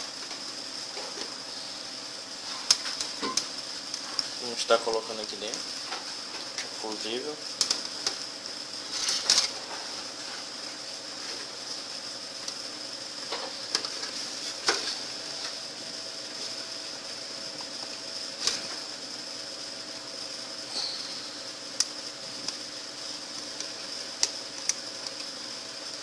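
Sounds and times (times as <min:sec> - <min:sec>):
faint high whine: 0:20.6 - 0:21.6.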